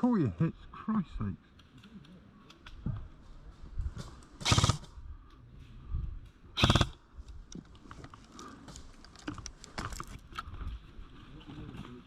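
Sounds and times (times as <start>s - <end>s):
faint clicks and rustles: 1.4s - 12.0s
airsoft gun rapid bursts: 4.4s - 4.8s, 6.6s - 7.0s.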